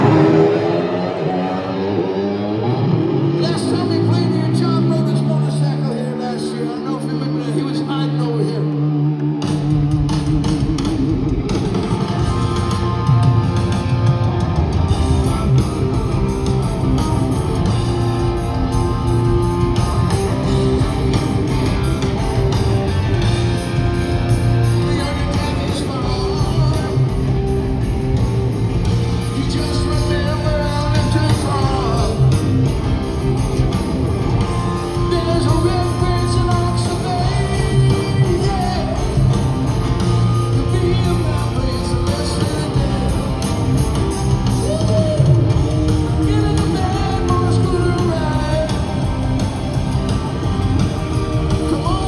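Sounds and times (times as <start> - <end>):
bass and drums: 0.0 - 8.2, 9.2 - 52.0
electric guitar: 0.0 - 52.0
person singing: 24.6 - 27.4, 29.2 - 32.6, 34.6 - 49.5.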